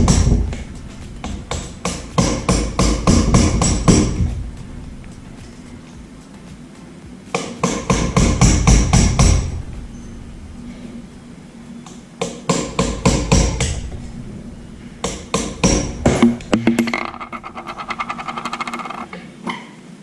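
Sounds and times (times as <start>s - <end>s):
hammer striking metal: 0.0s - 18.8s.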